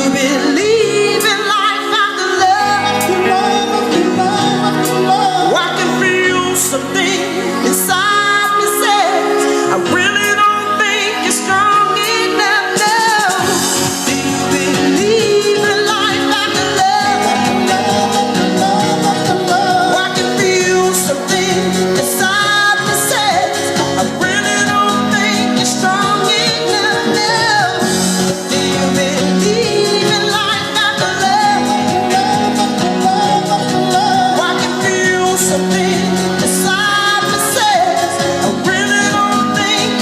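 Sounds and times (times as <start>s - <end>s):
song with singing voice: 0.0s - 40.0s.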